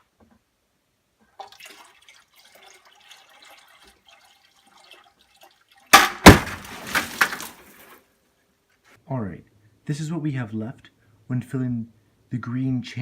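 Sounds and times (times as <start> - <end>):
water trickling into plastic pail: 1.2 - 8.0
loud crashes: 6.0 - 7.5.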